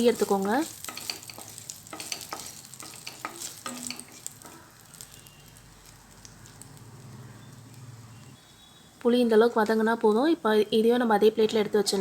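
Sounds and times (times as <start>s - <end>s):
spoon scraping and tapping pan: 0.0s - 5.1s
food sizzling in oil: 0.0s - 8.2s.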